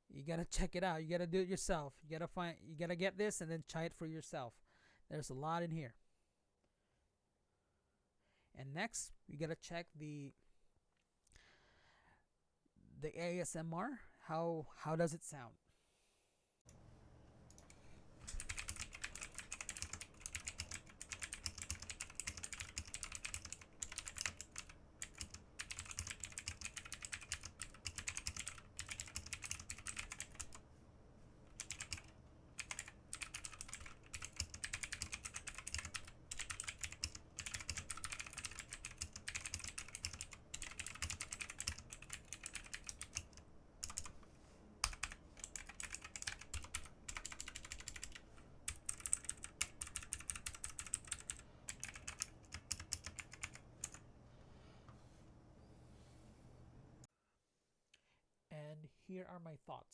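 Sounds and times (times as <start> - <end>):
clicky mechanical keyboard typing: 17.5 - 30.6, 31.5 - 54.0.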